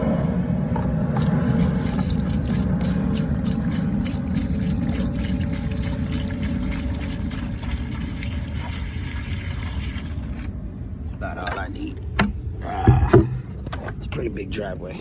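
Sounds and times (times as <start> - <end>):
steady low hum: 0.0 - 9.6, 10.2 - 15.0
liquid glugging and splashing: 0.8 - 10.5, 12.6 - 14.0.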